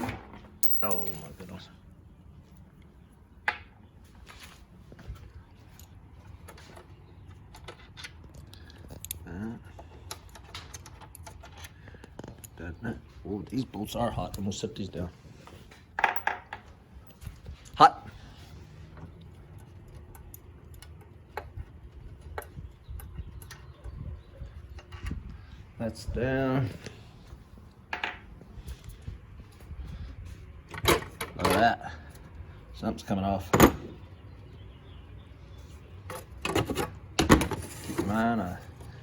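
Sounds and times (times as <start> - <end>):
tools and bolts clicking: 9.8 - 12.6.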